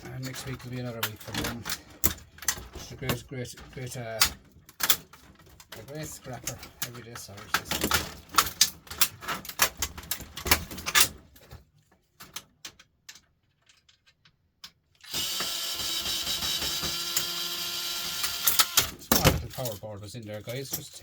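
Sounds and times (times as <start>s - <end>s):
plastic and metal parts clattering: 0.0s - 15.6s, 18.1s - 21.0s
power drill driving screws: 15.0s - 19.1s.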